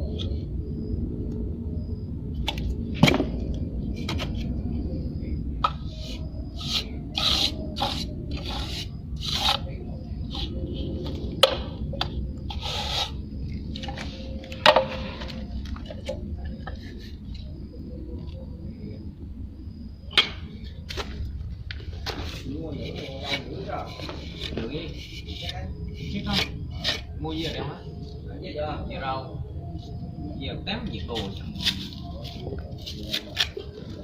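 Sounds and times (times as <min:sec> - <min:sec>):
low rumble: 0:00.0 - 0:32.8
trowel scraping render: 0:06.6 - 0:09.6, 0:12.5 - 0:13.2, 0:22.0 - 0:27.1, 0:31.2 - 0:33.7.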